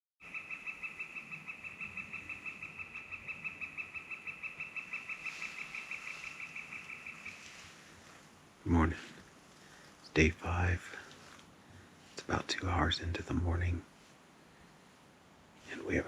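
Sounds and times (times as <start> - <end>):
bird trilling: 0.2 - 7.6.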